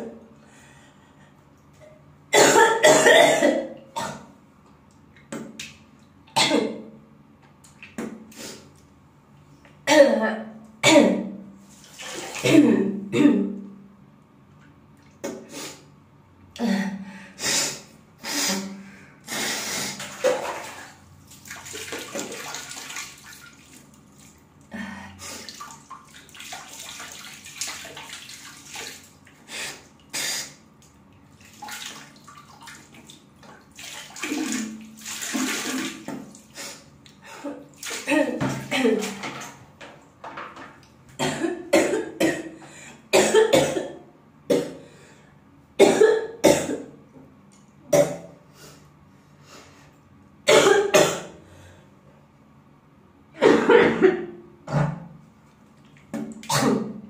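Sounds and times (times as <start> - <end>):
girl coughing: 2.3 - 4.3, 6.4 - 6.8, 9.9 - 11.2, 12.4 - 13.5, 41.2 - 44.8, 45.8 - 46.9, 50.5 - 51.4, 53.4 - 54.3, 56.5 - 56.9.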